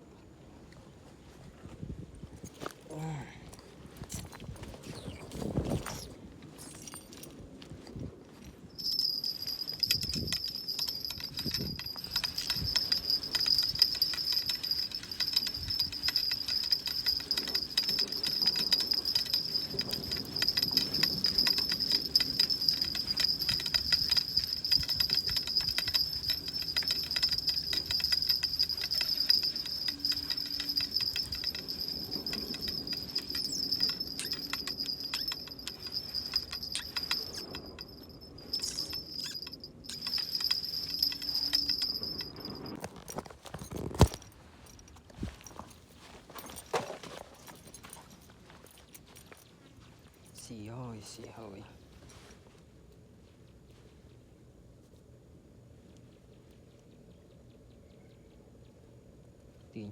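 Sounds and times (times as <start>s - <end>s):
insects trilling: 8.8s - 42.8s.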